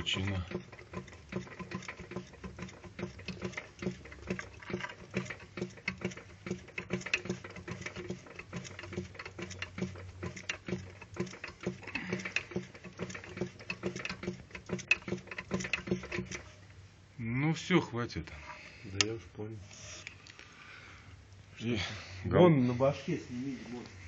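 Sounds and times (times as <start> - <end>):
engine knocking: 0.0 - 16.5.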